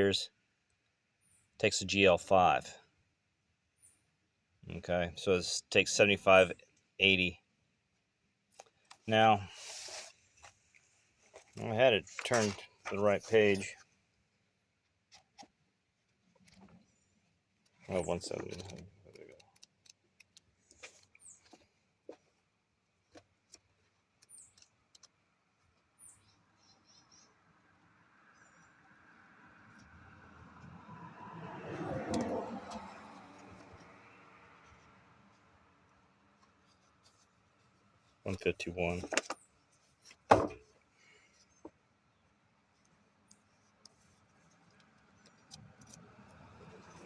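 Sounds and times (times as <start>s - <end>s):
faint clicks and ticks: 17.6s - 21.6s, 23.1s - 25.8s.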